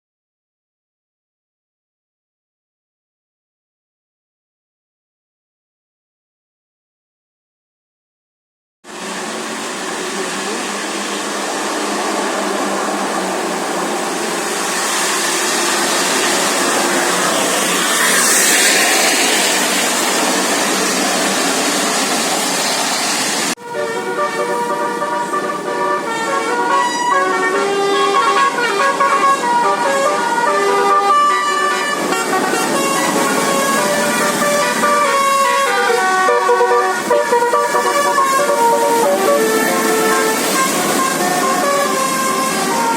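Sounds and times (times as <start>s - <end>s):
vehicle rushing on road: 8.9s - 42.9s
bus musical horn melody: 23.5s - 42.9s.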